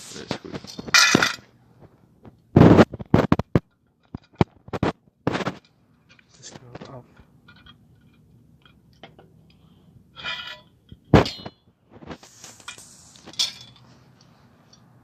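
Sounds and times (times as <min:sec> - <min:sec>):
metal tools clinking and knocking: 0:00.6 - 0:01.5, 0:05.6 - 0:11.7, 0:13.3 - 0:13.9
rustling scrape: 0:04.5 - 0:05.6, 0:10.2 - 0:15.0.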